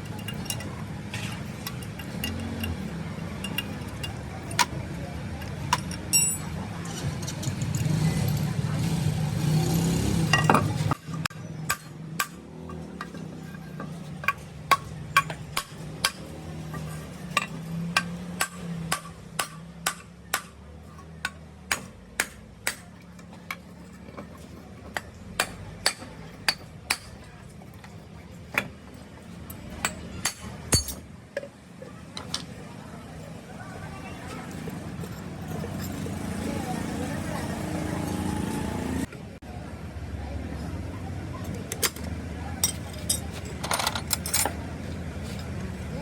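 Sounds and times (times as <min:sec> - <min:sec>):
hand tools tapping on metal: 0:00.0 - 0:08.6, 0:10.2 - 0:31.6, 0:41.5 - 0:44.6.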